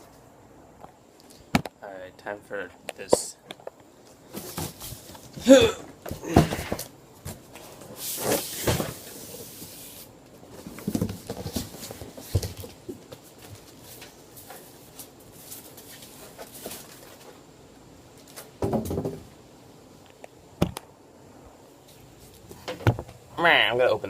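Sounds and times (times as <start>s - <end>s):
cardboard rustling: 4.3s - 5.4s, 6.1s - 17.4s.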